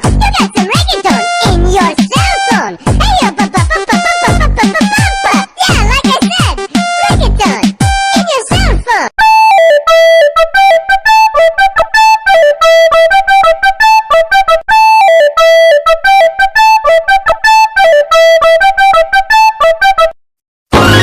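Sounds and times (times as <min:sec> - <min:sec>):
electronic keyboard ringtone melody: 0:06.3 - 0:07.2, 0:09.2 - 0:20.2.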